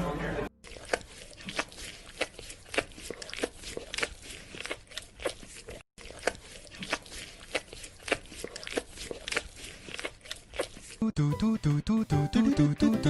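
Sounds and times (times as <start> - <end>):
crunching and clicking: 0.6 - 11.0.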